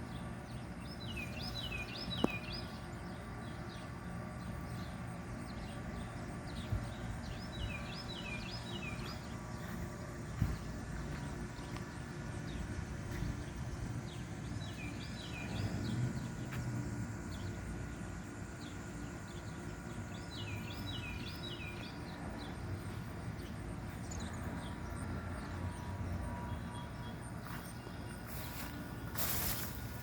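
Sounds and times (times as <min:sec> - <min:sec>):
bird chirping: 0:00.0 - 0:10.7, 0:18.6 - 0:30.0
air conditioner humming: 0:00.0 - 0:30.0.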